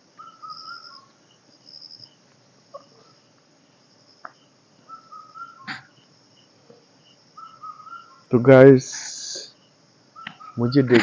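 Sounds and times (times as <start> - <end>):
faint high chirps: 0.0 - 8.4
bird whistled phrase: 4.9 - 5.7, 7.4 - 8.2.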